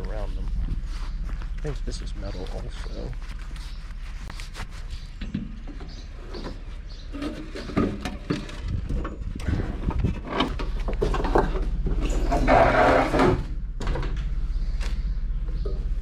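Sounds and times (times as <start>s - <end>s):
low hum: 0.0s - 16.0s
junk knocking and clattering: 5.2s - 14.4s.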